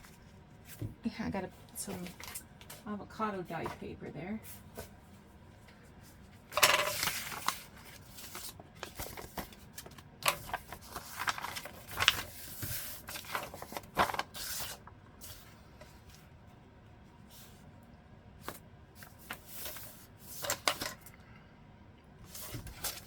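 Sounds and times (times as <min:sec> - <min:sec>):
paper rustling and crinkling: 0:01.7 - 0:02.8, 0:05.8 - 0:16.3, 0:18.4 - 0:21.1, 0:22.2 - 0:23.0.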